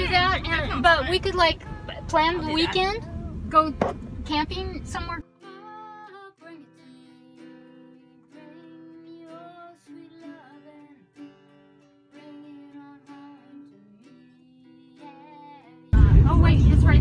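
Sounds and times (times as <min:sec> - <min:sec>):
strummed acoustic guitar: 0:00.0 - 0:17.0
person singing: 0:05.2 - 0:11.2, 0:12.1 - 0:16.4.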